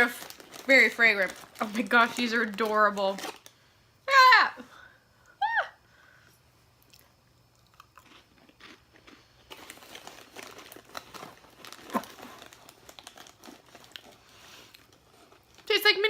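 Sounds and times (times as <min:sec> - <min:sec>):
crunchy crackers being chewed: 0:00.0 - 0:03.6, 0:06.8 - 0:15.7.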